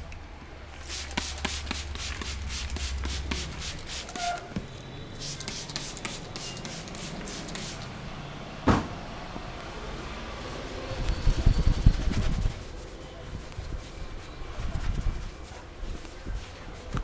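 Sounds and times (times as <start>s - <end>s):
hands rubbing: 0.8s - 4.4s, 10.5s - 17.0s
loud thump: 8.6s - 9.1s
hands patting on a head: 14.6s - 17.0s.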